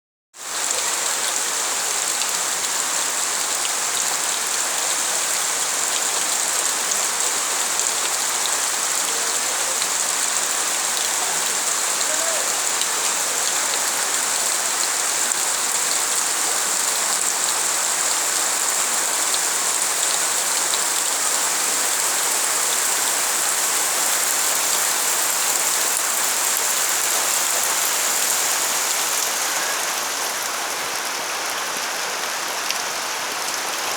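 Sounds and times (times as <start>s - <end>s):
heavy rain hissing: 0.4s - 33.9s.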